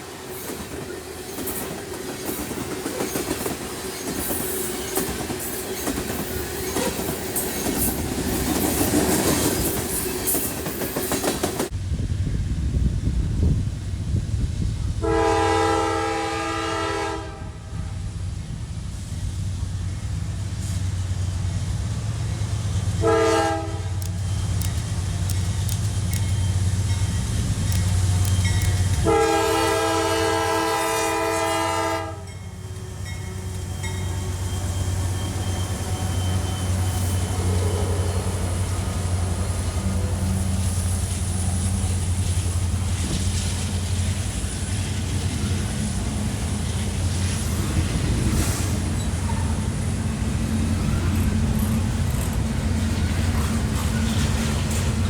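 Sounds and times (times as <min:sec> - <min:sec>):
train low rumble: 0:00.0 - 0:55.0
locomotive air horn: 0:15.0 - 0:18.1, 0:23.0 - 0:24.2, 0:29.0 - 0:35.1.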